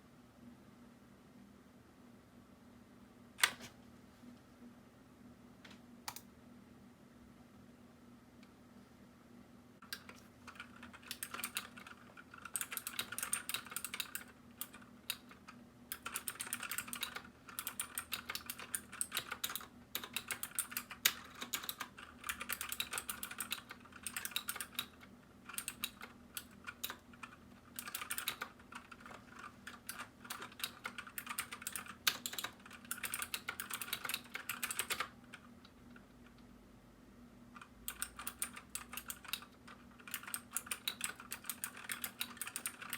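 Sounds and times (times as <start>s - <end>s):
mechanical keyboard typing: 9.8s - 36.1s, 37.6s - 42.9s.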